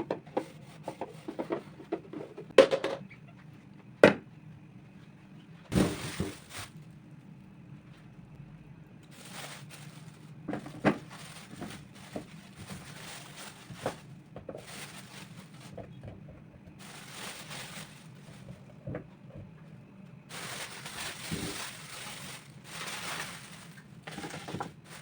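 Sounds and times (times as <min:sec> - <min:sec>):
faint low hum: 0:00.0 - 0:25.0
soft rustling: 0:05.8 - 0:06.9, 0:09.1 - 0:15.8, 0:16.8 - 0:18.8, 0:20.3 - 0:25.0.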